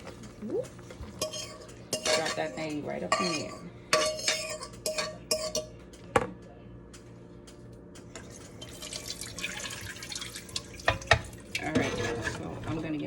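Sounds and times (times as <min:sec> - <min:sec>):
tap water running: 0:08.2 - 0:11.8.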